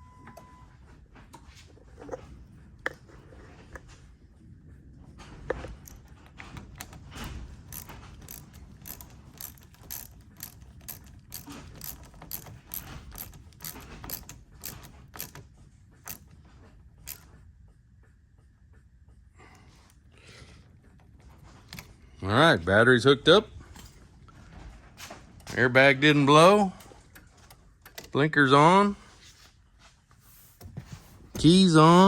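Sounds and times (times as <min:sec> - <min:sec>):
ratchet wrench clicking: 0:06.8 - 0:15.4, 0:16.1 - 0:16.3.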